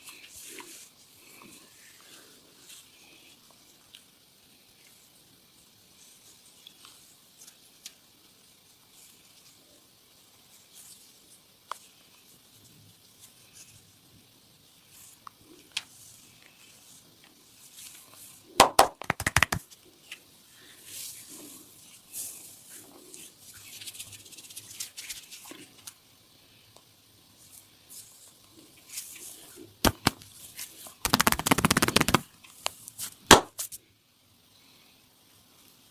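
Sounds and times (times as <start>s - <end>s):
hands rubbing skin and clothing: 17.6s - 19.8s, 20.9s - 25.8s, 27.4s - 33.8s
quick sharp massage hits: 18.6s - 19.6s, 29.8s - 30.2s, 31.0s - 32.2s, 33.3s - 33.6s.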